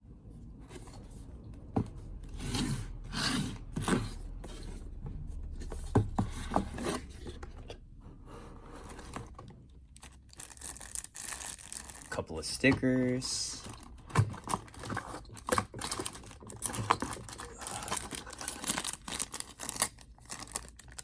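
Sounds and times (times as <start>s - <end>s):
packaging rubbing and scraping: 13.5s - 21.0s.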